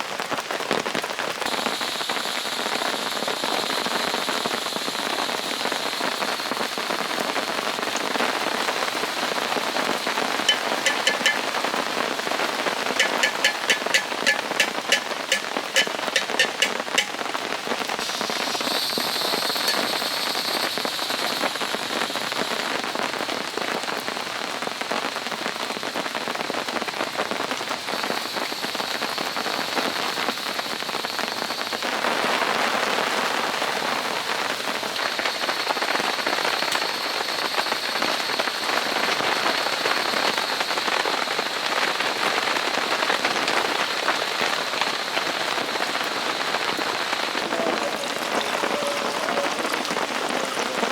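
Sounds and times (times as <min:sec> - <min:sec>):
steady rain falling: 0:00.0 - 0:50.9
faint steady high tone: 0:10.2 - 0:12.0, 0:12.8 - 0:22.7, 0:46.6 - 0:50.9.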